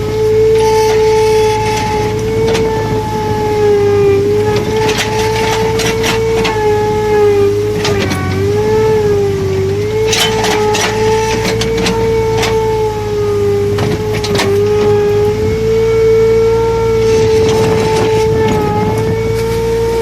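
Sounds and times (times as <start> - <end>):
excavator engine whining: 0.0 - 20.0
sharp metal clanks: 10.0 - 12.6.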